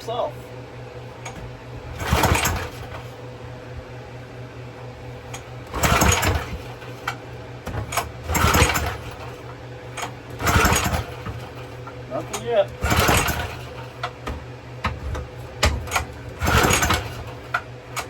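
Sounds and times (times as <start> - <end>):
steady low hum: 0.0 - 18.0
recoil starter cranking: 1.2 - 3.1, 5.3 - 7.2, 7.8 - 14.2, 15.6 - 18.0.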